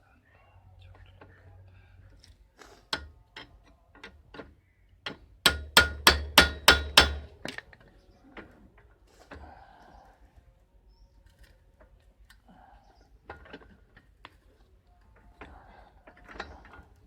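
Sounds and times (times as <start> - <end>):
hammer striking steel: 5.5 - 7.3.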